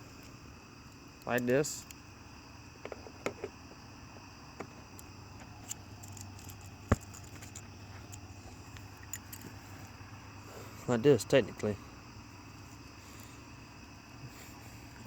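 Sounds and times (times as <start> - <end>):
chainsaw chain links rattling: 5.0 - 9.9.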